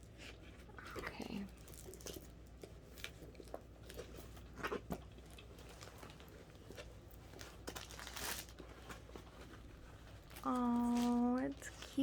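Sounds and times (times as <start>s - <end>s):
packaging rustle: 1.6s - 12.0s
plastic packaging crinkling: 5.3s - 12.0s.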